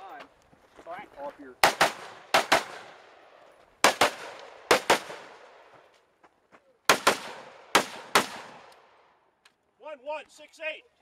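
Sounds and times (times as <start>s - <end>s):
gunshots with echo: 1.6s - 3.1s, 3.8s - 5.6s, 6.9s - 8.7s.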